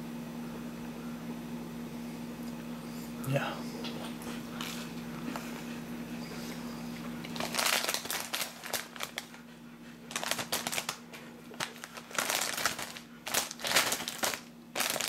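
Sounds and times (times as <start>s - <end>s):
snack bag crinkling: 7.2s - 9.4s, 10.1s - 15.0s.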